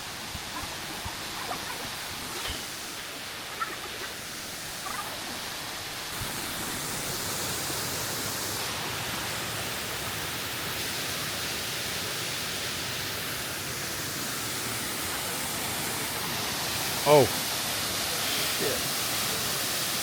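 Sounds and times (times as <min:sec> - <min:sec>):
waterfall rushing water: 0:00.0 - 0:20.0.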